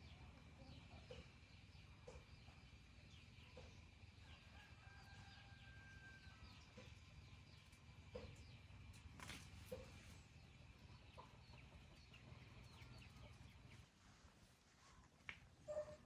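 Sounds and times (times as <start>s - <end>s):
faint chickens clucking: 0.0s - 14.0s
chicks peeping: 9.7s - 13.9s.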